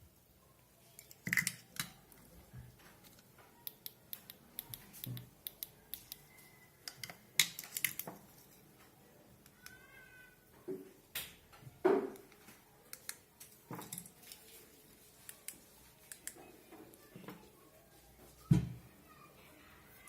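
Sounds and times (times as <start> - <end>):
sharp clicks and taps: 3.0 - 6.3.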